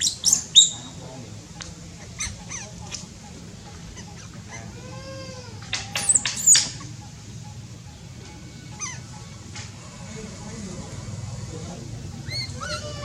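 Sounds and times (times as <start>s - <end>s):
shrill animal squeals: 0.0s - 1.0s, 2.0s - 7.0s, 8.2s - 11.6s, 12.2s - 13.0s
animal call rising and falling: 12.2s - 13.0s.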